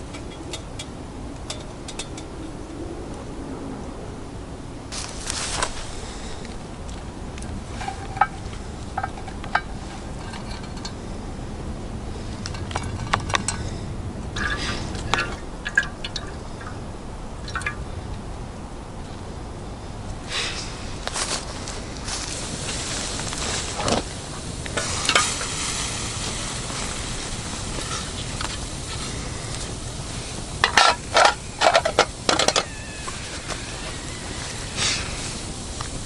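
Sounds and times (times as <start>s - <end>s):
cooking gear clinking: 30.6s - 32.8s.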